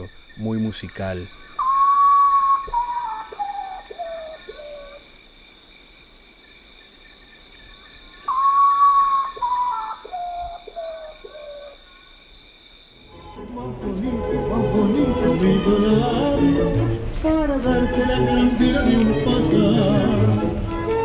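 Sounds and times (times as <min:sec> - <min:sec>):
night insects chorus: 0:00.0 - 0:14.0
bird whistling song: 0:01.4 - 0:05.0, 0:08.2 - 0:12.1.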